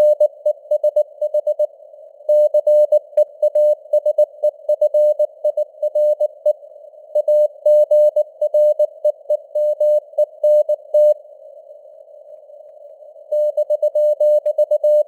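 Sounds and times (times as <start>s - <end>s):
morse code beeps: 7.2s - 11.2s, 13.4s - 15.0s.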